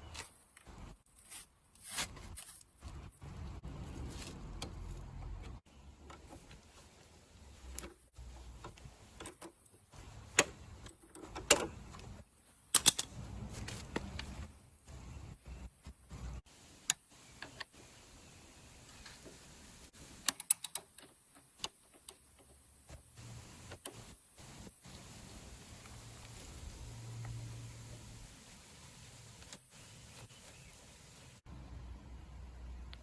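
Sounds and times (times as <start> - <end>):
hand tools clicking on metal: 12.7 - 13.2.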